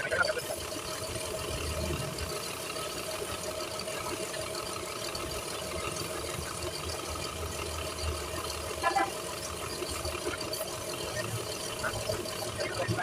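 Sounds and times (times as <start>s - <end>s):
machine hum: 0.0s - 13.0s.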